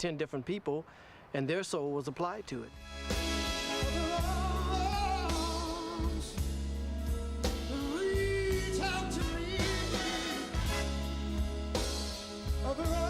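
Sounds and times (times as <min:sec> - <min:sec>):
bass and drums: 0:02.8 - 0:13.0
person singing with vibrato: 0:03.7 - 0:06.4, 0:07.6 - 0:11.0.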